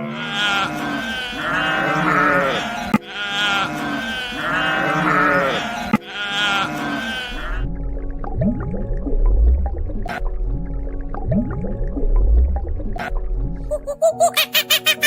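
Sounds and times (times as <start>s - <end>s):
sheep bleating: 0.0s - 7.6s.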